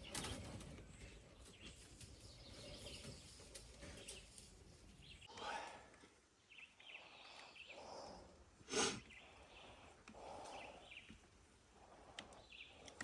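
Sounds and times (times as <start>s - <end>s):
small birds chirping: 0.0s - 5.7s, 6.3s - 13.0s.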